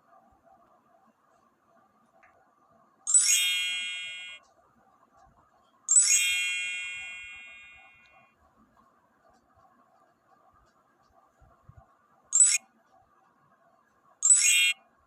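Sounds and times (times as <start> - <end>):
bell-like ding: 3.1 - 4.4, 5.9 - 8.0.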